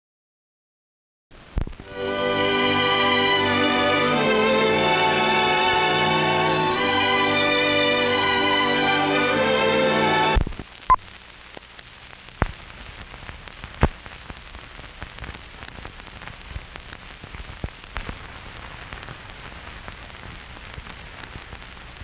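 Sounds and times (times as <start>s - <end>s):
steady rain falling: 1.4s - 9.2s, 10.3s - 22.0s
sharp clicks of raindrops: 10.4s - 22.0s.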